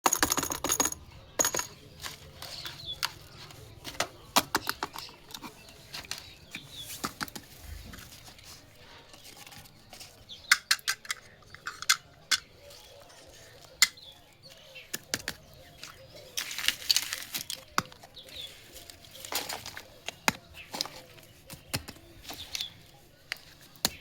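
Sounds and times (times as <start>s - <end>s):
plastic pieces clicking: 0.0s - 7.5s, 9.2s - 12.5s, 14.9s - 22.7s.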